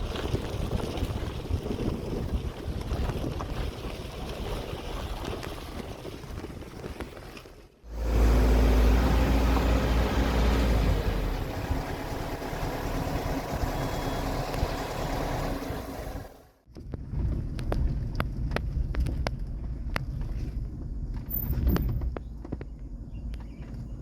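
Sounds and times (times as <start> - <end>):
wind: 0.0 - 24.0
large engine rumbling: 7.8 - 24.0.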